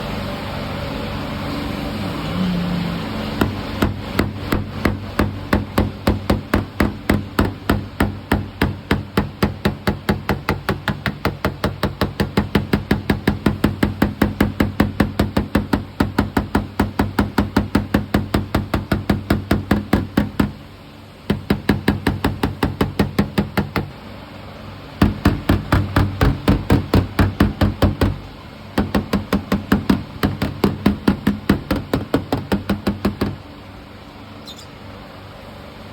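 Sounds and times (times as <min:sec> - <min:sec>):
steady low hum: 0:00.0 - 0:35.9
hammer tapping on car door: 0:03.4 - 0:20.6, 0:21.3 - 0:24.0, 0:25.0 - 0:33.4.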